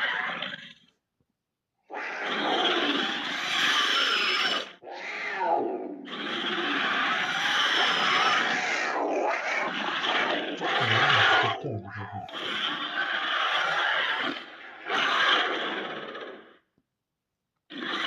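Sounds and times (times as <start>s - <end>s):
creature roar: 7.7s - 12.6s.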